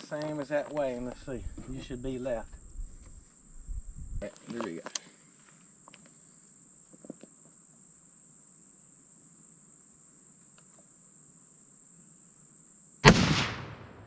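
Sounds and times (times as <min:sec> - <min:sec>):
crickets chirping: 0:00.0 - 0:14.0
rifle shot with echo: 0:13.0 - 0:14.0.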